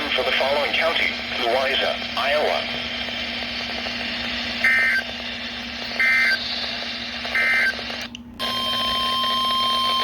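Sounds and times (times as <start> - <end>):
steady high alarm tone: 3.7 - 5.3, 5.9 - 10.0.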